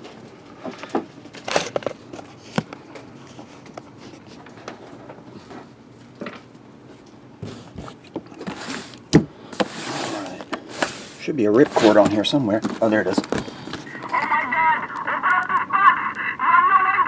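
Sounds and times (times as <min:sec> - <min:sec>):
cardboard box rustling: 0:09.6 - 0:14.0.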